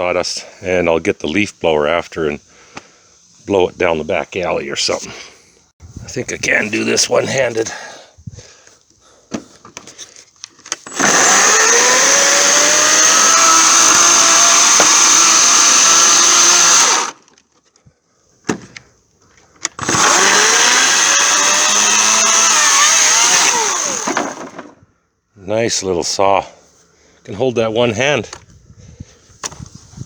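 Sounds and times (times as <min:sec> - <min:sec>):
electric chainsaw cutting wood: 0:10.8 - 0:17.3, 0:19.7 - 0:24.8.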